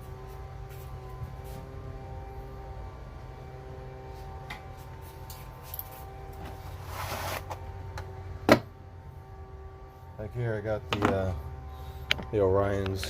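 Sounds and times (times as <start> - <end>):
low background hum: 0.0 - 13.0
rustle: 4.2 - 7.6.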